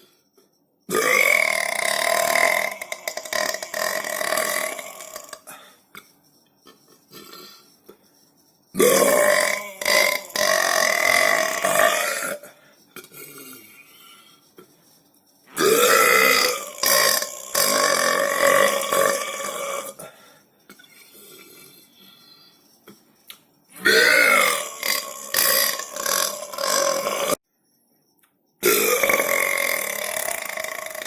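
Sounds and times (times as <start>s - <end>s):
person burping: 0.9s - 6.1s, 8.8s - 13.8s, 15.6s - 20.1s, 23.8s - 27.4s, 28.6s - 31.0s.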